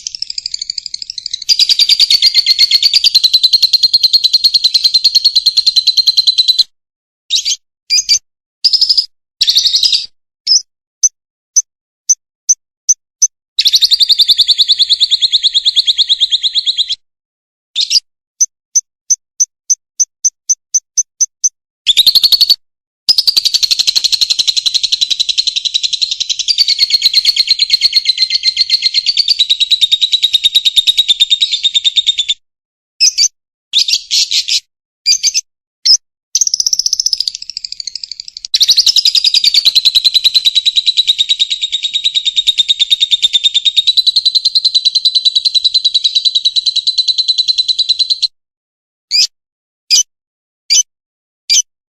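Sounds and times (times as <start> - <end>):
bird shrill buzzing trills: 0.0 - 6.6, 21.9 - 31.7
bird sharp chirps: 0.0 - 6.7, 7.3 - 17.0, 17.8 - 32.4, 33.0 - 48.3, 49.1 - 49.3, 50.7 - 50.9, 51.5 - 51.7.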